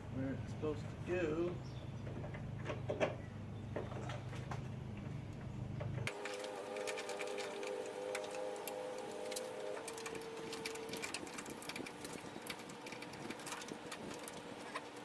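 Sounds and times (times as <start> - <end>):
small electric motor whining: 6.1 - 15.0.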